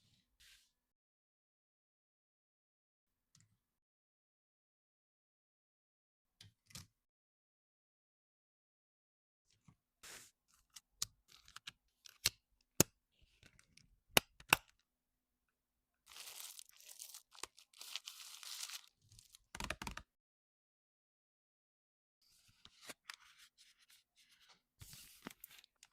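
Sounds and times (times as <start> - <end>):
packaging tearing and crinkling: 16.1 - 19.4
packaging clicks and taps: 19.5 - 20.0.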